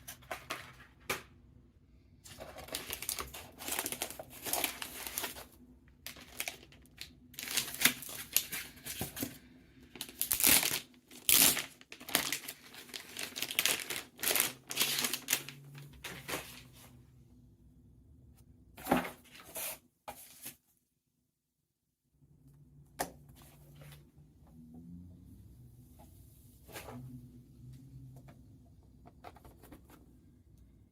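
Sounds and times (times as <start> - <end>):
plastic and paper crinkling and tearing: 2.3 - 17.0.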